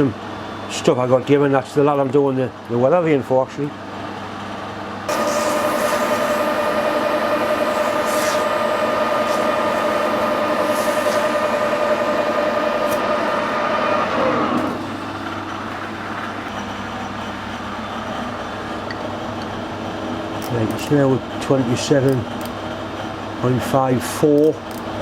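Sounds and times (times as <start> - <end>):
metal lathe whining: 5.1 - 19.5.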